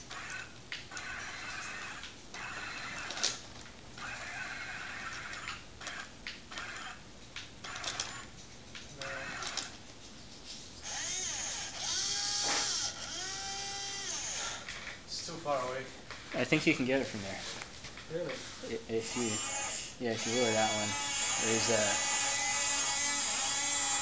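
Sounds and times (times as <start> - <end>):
motor clicks: 0.0 - 3.4, 4.0 - 9.8
small electric motors whirring: 0.0 - 3.4, 4.0 - 7.0, 7.6 - 8.3, 9.0 - 9.8, 10.8 - 14.9, 18.9 - 24.0.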